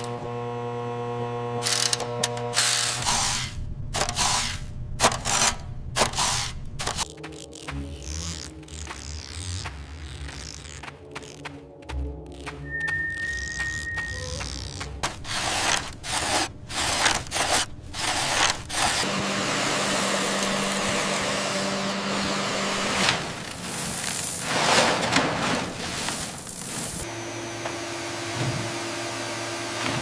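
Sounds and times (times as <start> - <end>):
robot vacuum whirring: 13.2 - 24.5.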